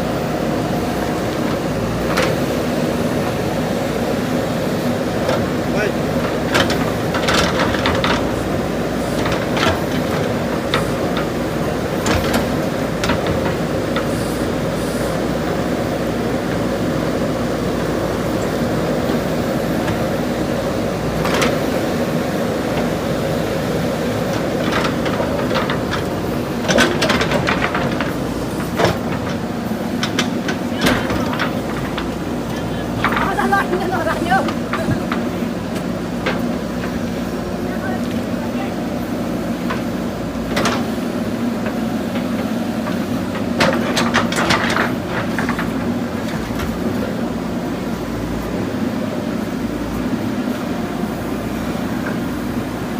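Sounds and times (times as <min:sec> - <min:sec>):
diesel engine running: 0:00.0 - 0:52.9
sharp knocks and clanks: 0:24.3 - 0:37.1, 0:41.6 - 0:46.9.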